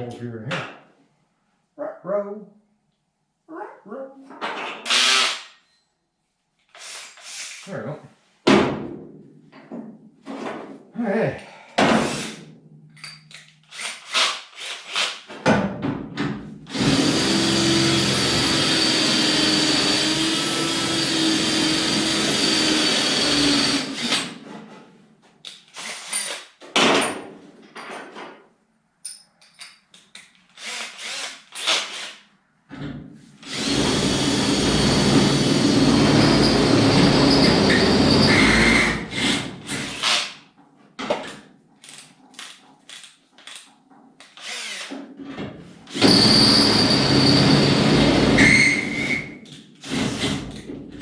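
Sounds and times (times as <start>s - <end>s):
electric drill whining: 4.9s - 5.5s, 16.7s - 24.3s, 30.6s - 32.1s, 33.4s - 40.3s, 44.4s - 45.0s, 45.9s - 50.4s.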